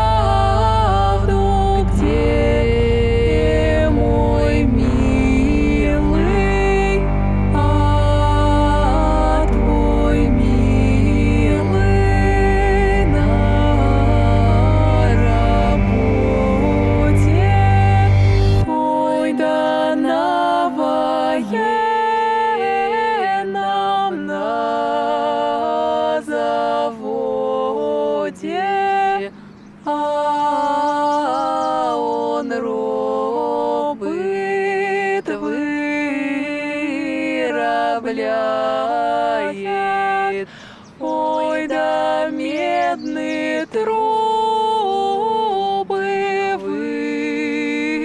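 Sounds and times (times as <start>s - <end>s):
a cappella vocal ensemble singing: 0.0s - 48.0s
singers breathing: 29.3s - 29.8s, 40.4s - 41.0s.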